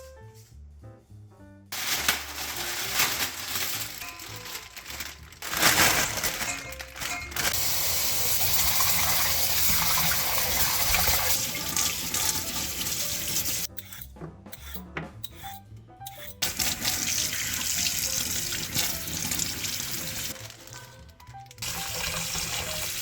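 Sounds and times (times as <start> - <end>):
tap water running into sink: 7.6 - 13.7, 16.4 - 20.8, 21.6 - 23.0.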